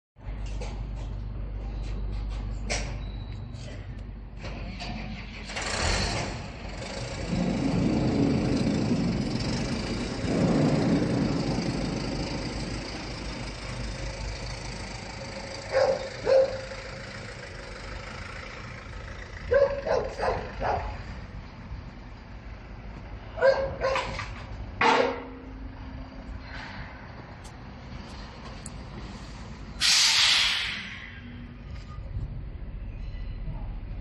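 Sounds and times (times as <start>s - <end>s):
tractor engine revving: 4.5s - 21.3s
dog barking: 15.7s - 16.7s, 19.5s - 21.0s, 23.4s - 24.2s.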